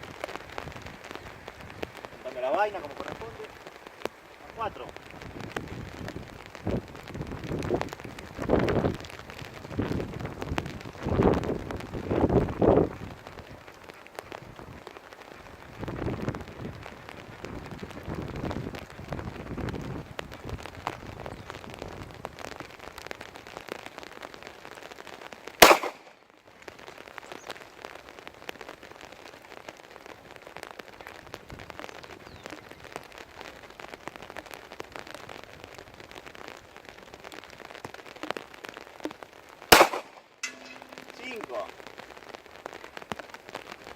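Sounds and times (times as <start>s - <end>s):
steady rain: 0.0s - 43.9s
loud pistol shot: 25.6s - 26.1s, 39.7s - 41.4s.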